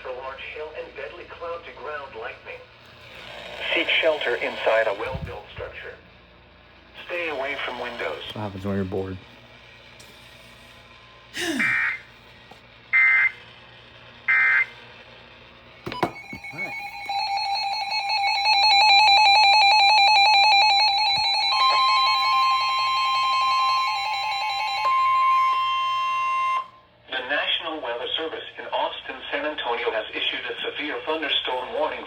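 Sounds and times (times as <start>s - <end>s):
steady single-pitched warning tone: 2.8s - 5.9s, 10.0s - 13.6s, 14.2s - 14.8s, 15.9s - 27.1s
two-tone pulsing alarm: 11.6s - 12.2s, 12.9s - 13.5s, 14.3s - 14.8s, 15.9s - 26.9s.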